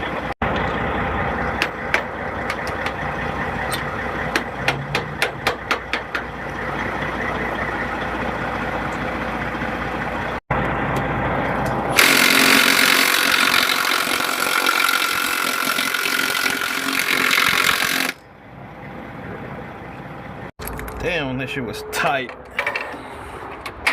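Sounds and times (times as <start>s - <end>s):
truck engine idling: 0.0s - 15.6s, 17.7s - 20.6s
impact wrench hammering: 4.3s - 6.3s.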